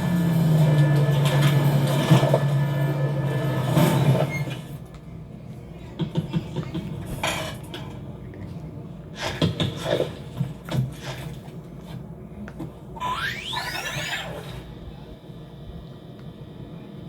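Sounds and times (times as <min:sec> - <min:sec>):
knocks and clatter: 0:06.0 - 0:08.0.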